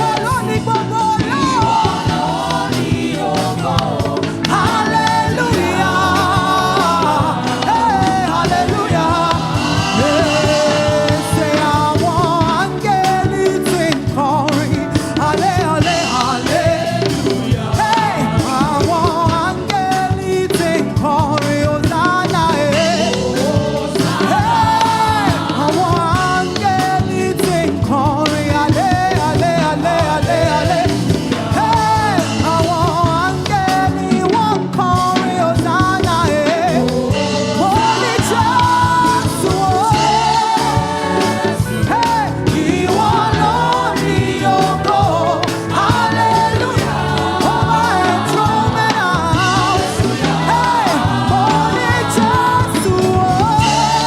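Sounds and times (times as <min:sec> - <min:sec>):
backing voices: 0:00.0 - 0:21.0, 0:22.2 - 0:34.4, 0:35.7 - 0:54.0
full band playing: 0:00.0 - 0:54.0
lead singer: 0:00.0 - 0:54.0
steady drum beat: 0:00.0 - 0:54.0.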